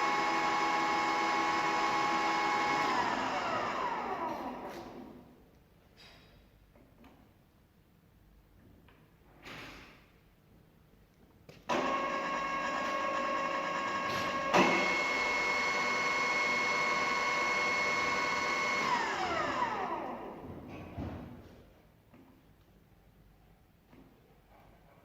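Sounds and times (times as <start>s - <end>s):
drilling machine gear whine: 11.8s - 20.2s.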